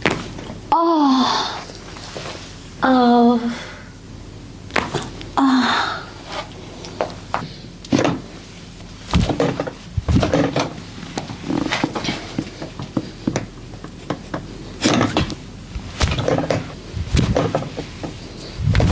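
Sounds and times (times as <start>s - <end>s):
hands rubbing skin: 15.7s - 18.9s.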